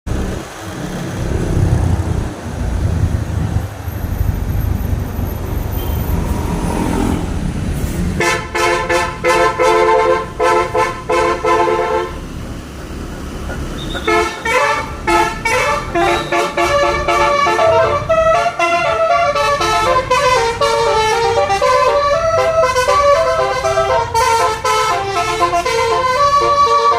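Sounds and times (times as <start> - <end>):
low engine and traffic rumble: 0.0 - 26.9
multi-trumpet bus horn melody: 8.1 - 12.2, 13.8 - 26.9.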